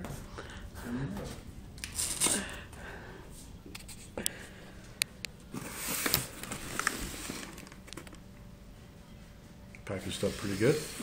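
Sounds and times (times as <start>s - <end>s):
packaging rustling: 5.6s - 8.2s.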